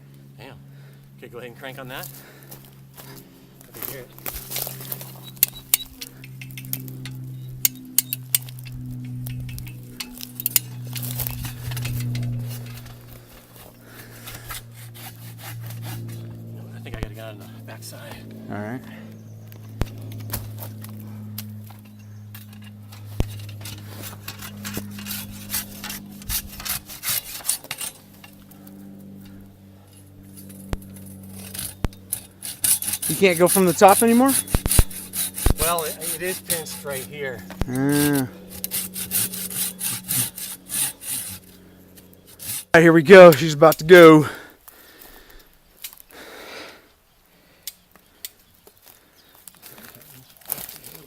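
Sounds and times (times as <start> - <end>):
steady low hum: 0.0 - 51.0
hand saw cutting wood: 3.8 - 18.2, 22.4 - 28.7, 30.2 - 44.4.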